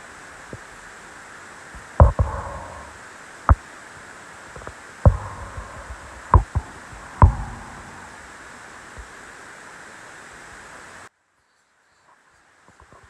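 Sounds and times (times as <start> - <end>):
sharp knocks: 2.0 - 2.9, 4.6 - 8.3.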